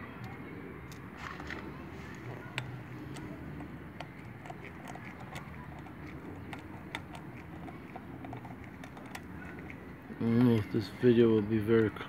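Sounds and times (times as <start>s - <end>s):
small metal parts clicking: 0.2s - 10.8s.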